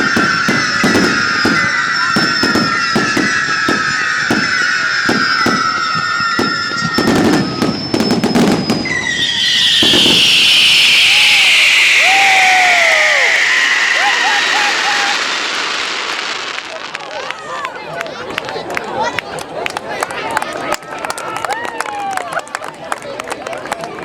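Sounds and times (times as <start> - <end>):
fireworks bursting: 0.0 - 17.7
crowd cheering: 0.0 - 24.0.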